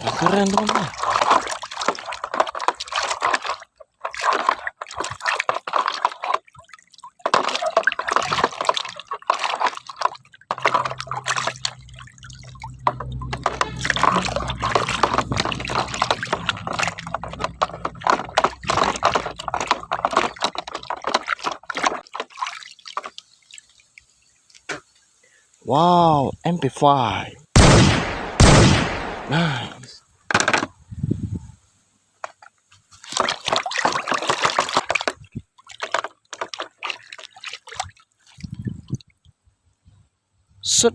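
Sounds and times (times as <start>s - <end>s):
water sloshing and splashing: 0.0s - 25.2s, 27.8s - 29.6s, 32.2s - 40.4s
low steady hum: 10.3s - 21.0s.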